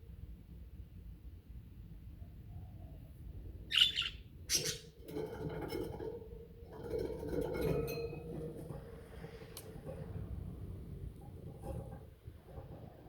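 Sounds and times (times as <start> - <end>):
budgerigar warbling chatter: 3.7 - 4.8
budgerigar harsh calls: 3.7 - 4.9.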